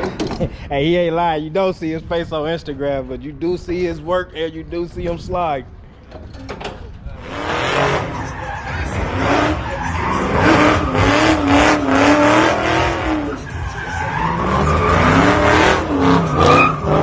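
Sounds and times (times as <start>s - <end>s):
car engine running hard: 7.1s - 17.0s
tires squealing: 7.1s - 17.0s.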